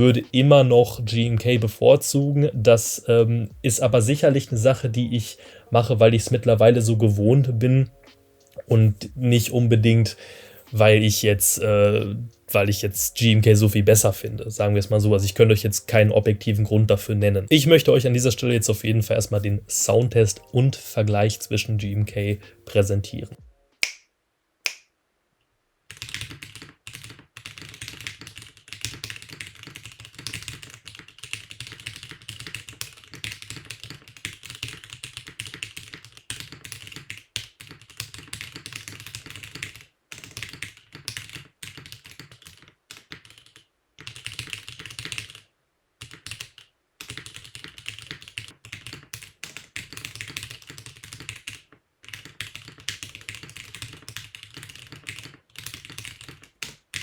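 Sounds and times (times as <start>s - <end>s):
mechanical keyboard typing: 25.9s - 45.4s, 46.0s - 57.0s.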